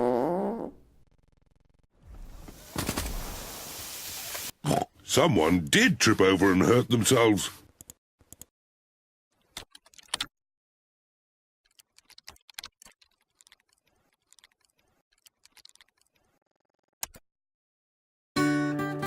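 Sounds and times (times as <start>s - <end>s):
small clicks and ticks: 11.7s - 17.2s.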